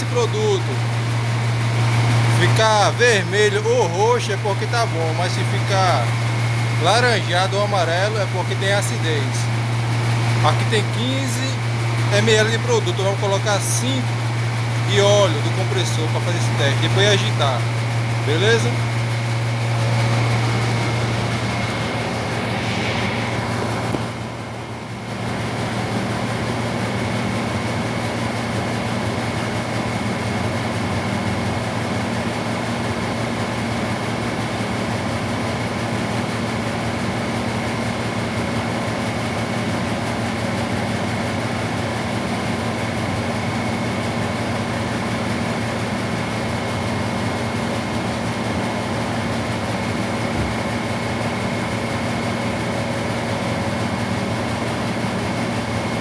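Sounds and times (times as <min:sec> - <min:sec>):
thin high whine: 0:00.0 - 0:25.3
machinery hum: 0:00.0 - 0:56.0.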